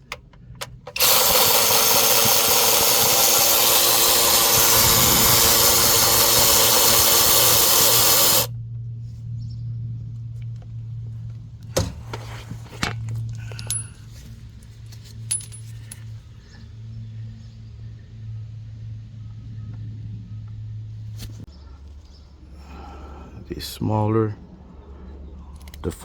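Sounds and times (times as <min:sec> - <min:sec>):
loud power tool running: 0:00.6 - 0:08.5
low steady hum: 0:04.0 - 0:26.0
steel bolts clinking: 0:13.4 - 0:14.0, 0:15.3 - 0:16.1.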